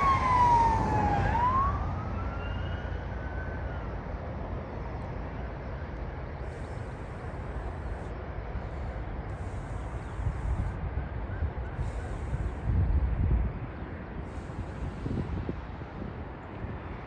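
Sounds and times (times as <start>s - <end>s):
siren wailing: 0.0s - 3.9s
wind rumble: 0.0s - 4.5s, 6.5s - 17.0s
distant jet aircraft: 0.0s - 17.0s.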